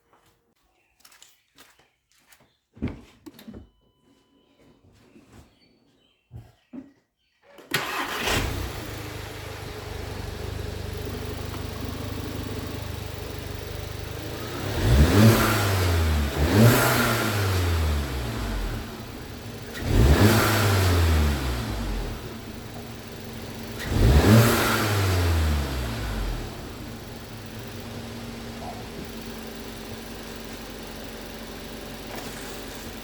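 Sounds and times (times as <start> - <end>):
car engine starting and idling: 7.7 - 33.0
engine revving: 7.7 - 33.0.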